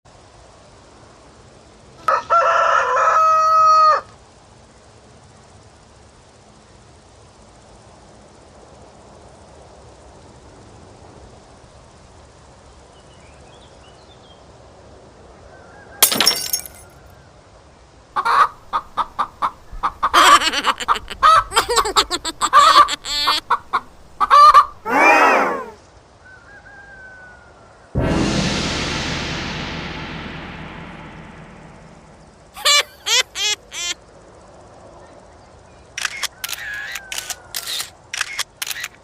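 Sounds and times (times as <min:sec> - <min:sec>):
loud noisy crash: 0:18.2 - 0:24.9, 0:28.0 - 0:33.9
chicken clucking and squawking: 0:18.2 - 0:25.8
sharp crack: 0:28.0 - 0:33.7.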